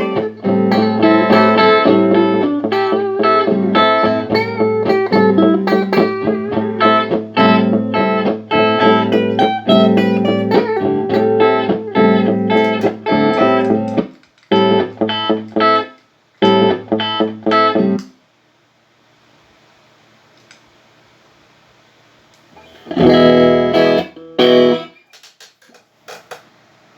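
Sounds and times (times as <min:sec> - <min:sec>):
looped guitar phrase: 0:00.0 - 0:18.0, 0:22.6 - 0:25.0.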